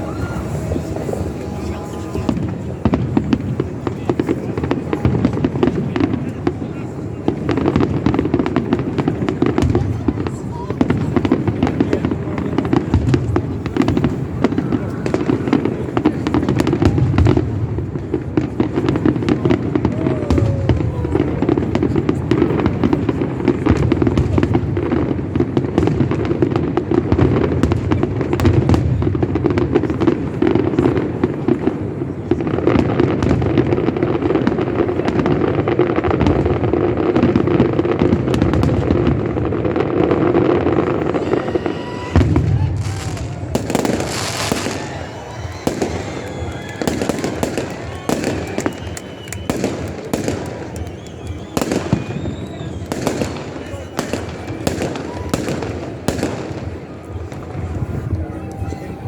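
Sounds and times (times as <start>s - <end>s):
rocket whistle: 0.0s - 2.4s, 43.9s - 55.3s
fireworks bangs and crackles: 0.0s - 59.0s.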